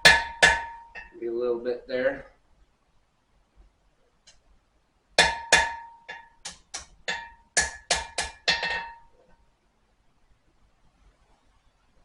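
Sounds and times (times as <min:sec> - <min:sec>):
hammer ringing on blade: 0:00.0 - 0:01.1, 0:05.2 - 0:06.4.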